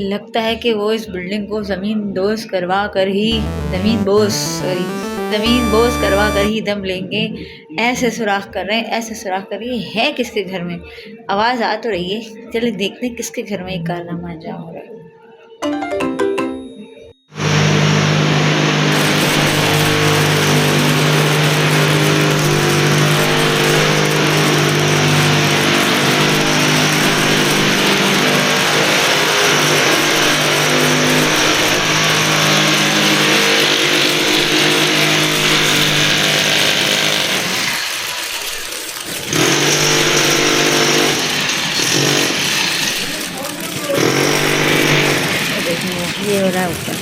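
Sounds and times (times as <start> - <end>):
electric drill boring into masonry: 17.4 - 43.3, 44.0 - 45.9.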